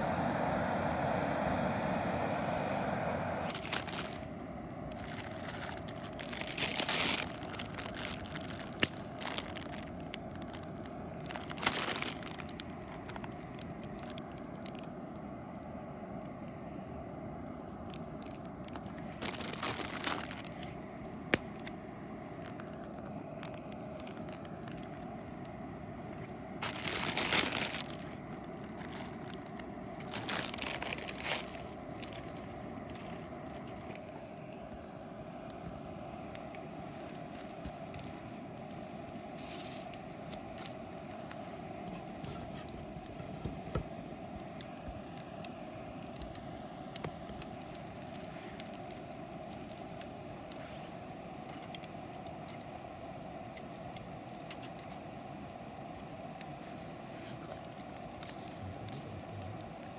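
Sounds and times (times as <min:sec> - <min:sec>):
crinkling and rustling: 0:03.4 - 0:15.1, 0:17.6 - 0:25.5, 0:26.1 - 0:34.7, 0:35.4 - 0:45.2, 0:54.4 - 0:55.0, 0:56.4 - 0:59.8.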